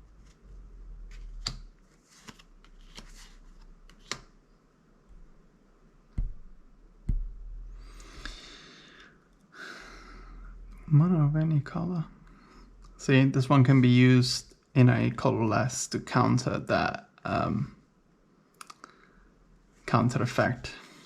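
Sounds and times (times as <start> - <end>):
cards sliding rustle: 0.1 - 4.3.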